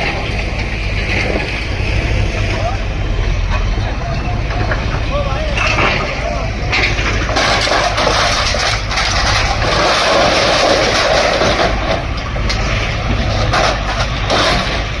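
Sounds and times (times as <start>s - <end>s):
diesel engine running loudly: 0.0s - 15.0s
knocks and clatter: 3.4s - 15.0s.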